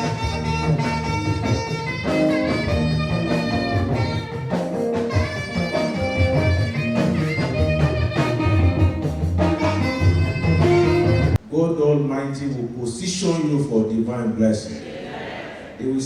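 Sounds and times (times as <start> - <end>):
instrumental background music: 0.0 - 11.4.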